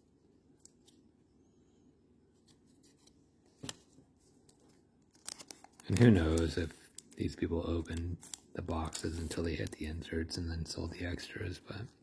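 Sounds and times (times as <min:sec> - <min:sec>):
handling of trading cards: 0:00.5 - 0:01.1, 0:02.4 - 0:10.0.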